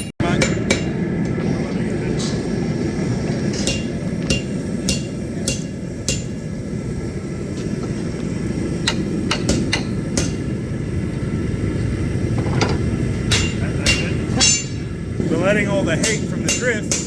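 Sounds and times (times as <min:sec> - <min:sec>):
hammer striking steel: 0:00.0 - 0:01.3, 0:03.5 - 0:06.6, 0:08.8 - 0:10.6, 0:12.6 - 0:14.9, 0:16.0 - 0:17.0
low rumble: 0:00.4 - 0:17.0.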